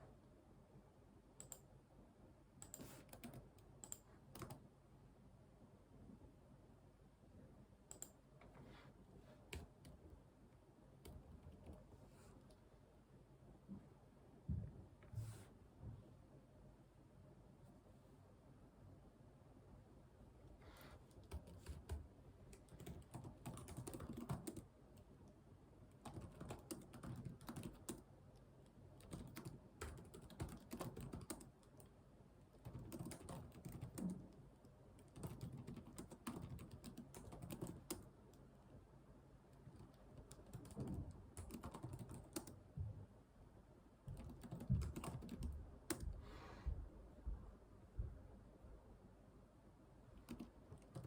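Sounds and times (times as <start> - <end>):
computer keyboard typing: 2.6 - 4.6, 21.2 - 25.1, 26.0 - 28.0, 29.0 - 31.9, 32.5 - 34.4, 35.0 - 38.1, 39.6 - 42.6, 44.1 - 46.1, 50.2 - 51.0.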